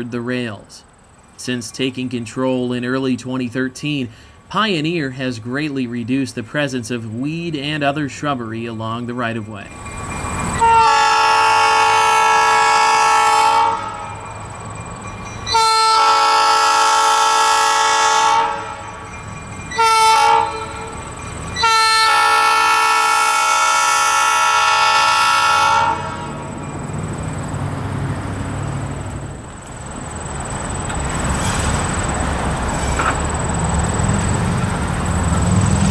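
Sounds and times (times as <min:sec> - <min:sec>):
locomotive air horn blasts: 0:10.6 - 0:14.2, 0:15.5 - 0:19.0, 0:19.7 - 0:21.0, 0:21.6 - 0:26.5
low engine rumble: 0:25.1 - 0:35.9.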